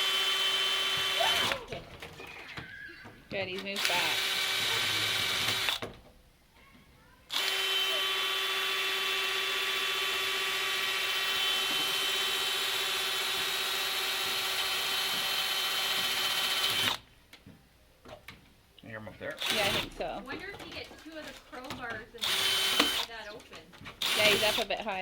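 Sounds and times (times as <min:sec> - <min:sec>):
power tool whining while cutting: 0:00.0 - 0:01.8, 0:03.7 - 0:05.8, 0:07.3 - 0:17.0, 0:19.4 - 0:20.4, 0:21.7 - 0:23.3, 0:24.0 - 0:24.8.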